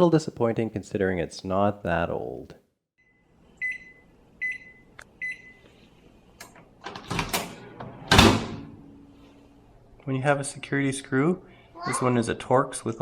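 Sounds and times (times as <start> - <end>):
microwave oven beeping: 3.0 - 5.7
microwave oven humming: 3.0 - 10.0.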